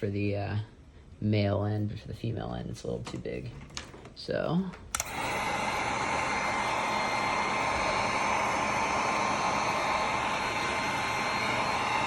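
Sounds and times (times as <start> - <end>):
heat gun blowing: 4.9 - 12.0.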